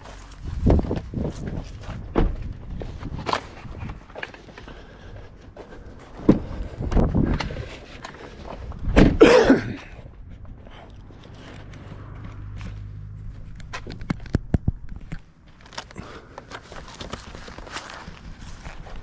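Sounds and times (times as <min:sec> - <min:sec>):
thuds and knocks: 0:02.0 - 0:02.7, 0:06.2 - 0:07.5, 0:08.8 - 0:09.3
footsteps: 0:09.8 - 0:19.0.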